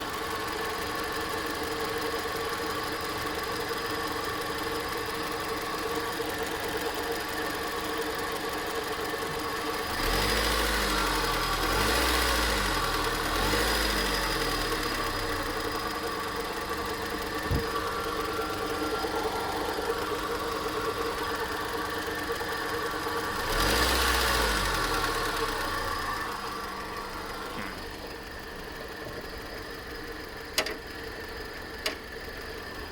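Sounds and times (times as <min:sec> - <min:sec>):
car engine idling: 0:00.0 - 0:32.9
engine revving: 0:09.8 - 0:16.0, 0:16.7 - 0:28.1
sharp click: 0:30.6 - 0:30.8.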